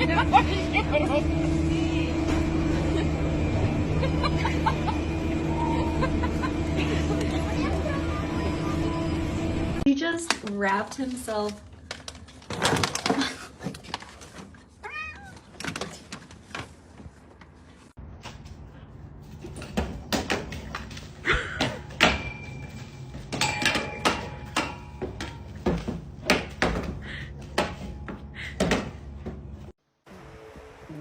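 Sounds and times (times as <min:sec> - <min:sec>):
cat meowing: 0:14.8 - 0:15.4
sharp knocks and clatters: 0:19.3 - 0:29.6.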